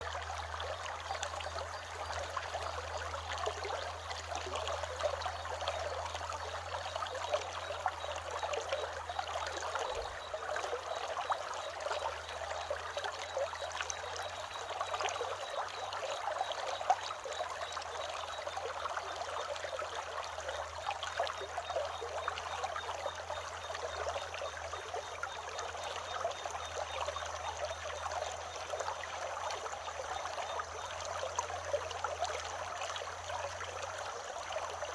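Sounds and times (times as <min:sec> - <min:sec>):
stream trickling and gurgling: 0:00.0 - 0:34.9
cicadas droning: 0:00.2 - 0:34.9.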